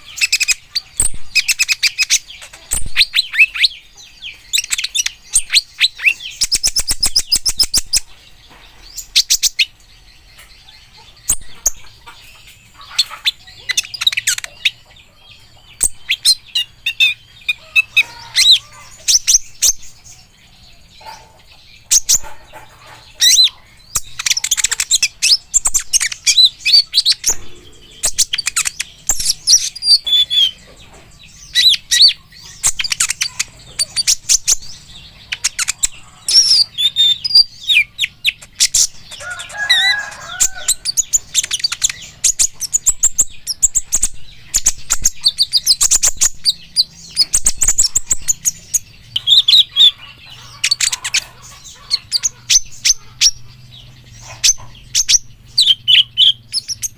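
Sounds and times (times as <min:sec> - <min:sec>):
sunbird chirps and trills: 0:00.0 - 0:56.9
lower warbled bird phrase: 0:27.3 - 0:28.4.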